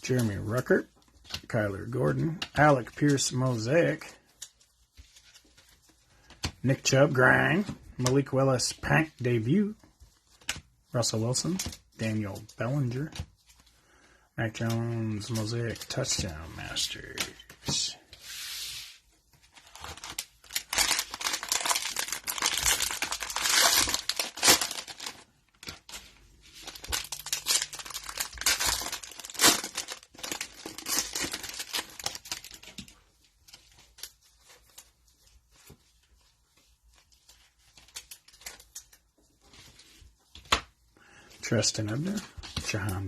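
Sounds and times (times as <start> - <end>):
cellophane wrapper crinkling: 19.4 - 39.2.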